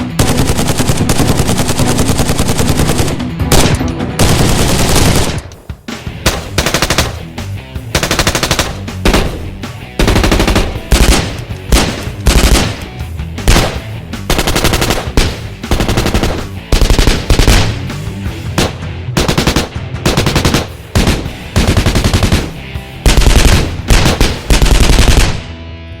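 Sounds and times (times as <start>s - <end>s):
automatic rifle bursts: 6.3s - 7.3s, 8.0s - 9.3s, 10.0s - 17.9s, 18.6s - 22.4s, 23.1s - 25.5s.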